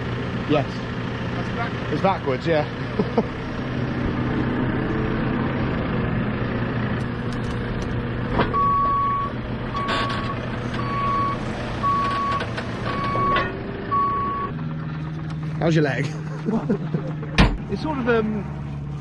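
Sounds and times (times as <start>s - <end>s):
diesel engine running: 0.0s - 19.0s
reversing alarm beeping: 8.6s - 14.6s.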